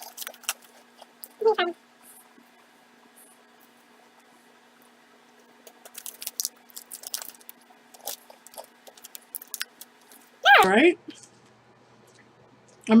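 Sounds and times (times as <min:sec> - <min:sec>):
crisp crunches of chewing cracker: 0:00.0 - 0:01.4, 0:05.7 - 0:10.3.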